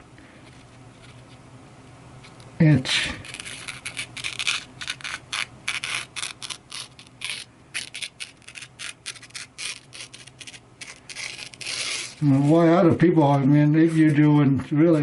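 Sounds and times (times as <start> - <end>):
knife slicing paper: 3.2 - 12.7.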